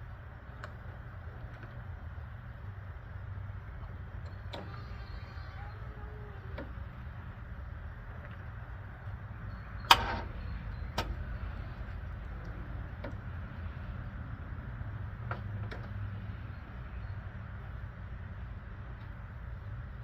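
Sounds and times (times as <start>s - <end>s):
fuel pump humming: 0.0s - 20.0s
light clicks: 0.5s - 1.9s.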